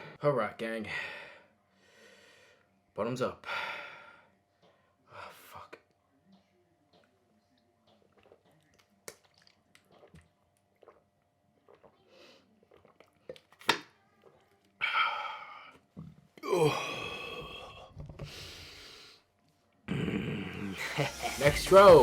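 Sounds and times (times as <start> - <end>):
man groaning: 16.4 - 17.9.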